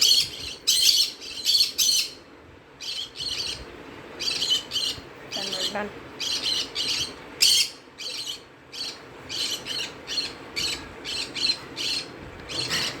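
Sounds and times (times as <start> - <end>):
raspy squawking bird chirps: 2.8 - 13.0.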